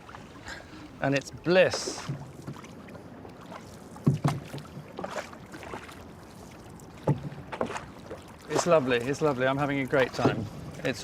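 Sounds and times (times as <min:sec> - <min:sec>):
low water wash: 0:00.0 - 0:11.0
oar strokes in water: 0:00.0 - 0:11.0.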